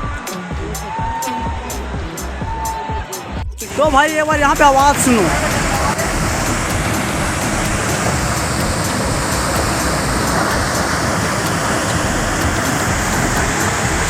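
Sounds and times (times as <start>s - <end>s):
waterfall rushing: 3.6s - 14.0s.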